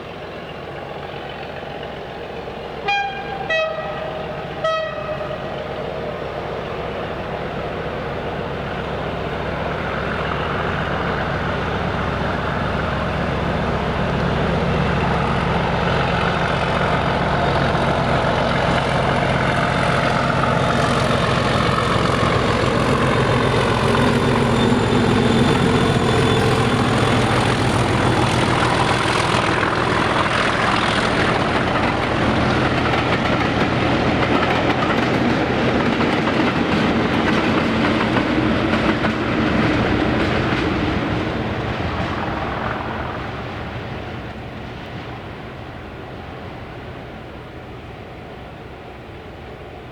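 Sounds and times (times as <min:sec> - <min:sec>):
diesel locomotive engine droning: 0:00.0 - 0:49.9
wheel-on-rail clatter: 0:15.0 - 0:43.4.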